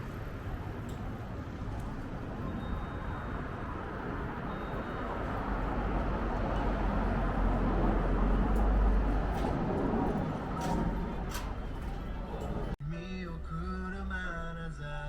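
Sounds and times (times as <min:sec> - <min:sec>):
street traffic: 0:00.0 - 0:15.0
vehicle passing with deep rumble: 0:01.3 - 0:12.8.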